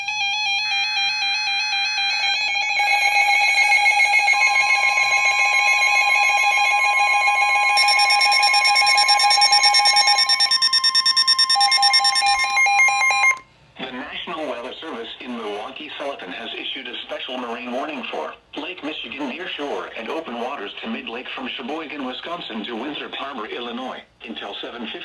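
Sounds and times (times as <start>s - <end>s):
steady electronic tone: 2.5s - 13.4s
electronic warbling data tones: 2.7s - 13.4s.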